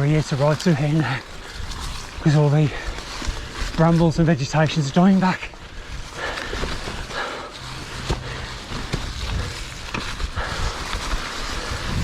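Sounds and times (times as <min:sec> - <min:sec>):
bike tyre trail noise: 0:00.0 - 0:12.0
bike knocks and rattles: 0:06.2 - 0:11.1.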